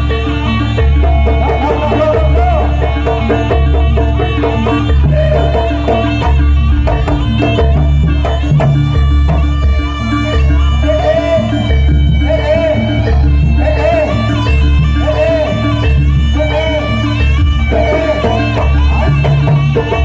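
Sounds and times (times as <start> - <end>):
drums: 0.0 - 20.0
traditional dance music: 0.0 - 20.0.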